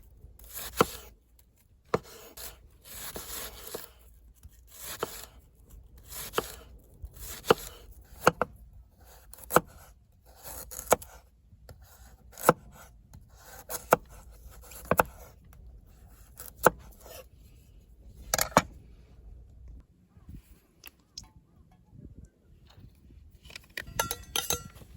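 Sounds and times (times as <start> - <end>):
low steady rumble: 15.3 - 24.9.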